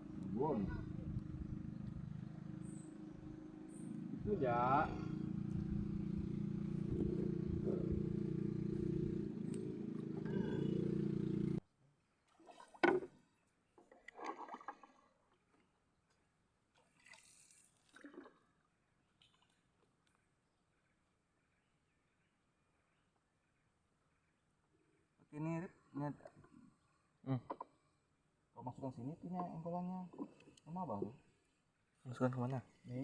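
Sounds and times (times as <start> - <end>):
motor humming: 0.2 - 11.6.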